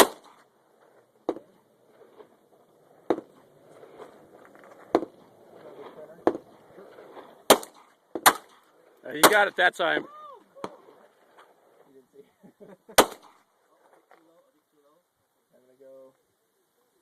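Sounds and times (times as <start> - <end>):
pistol shots: 0.0 - 0.4, 7.5 - 8.6, 9.2 - 9.5, 13.0 - 13.4.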